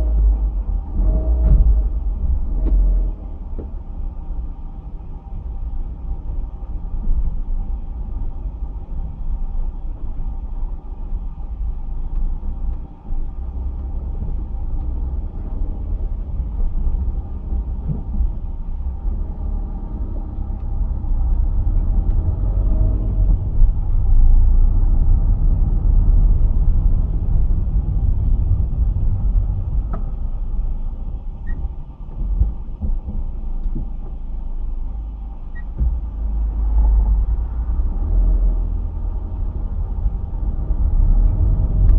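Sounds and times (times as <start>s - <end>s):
car rumbling on the move: 0.0s - 41.9s.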